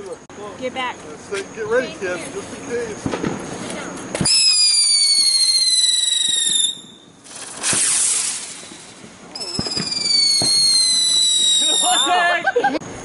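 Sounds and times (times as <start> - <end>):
loud firework hiss: 2.4 - 12.3
firework whistle falling: 4.2 - 12.2.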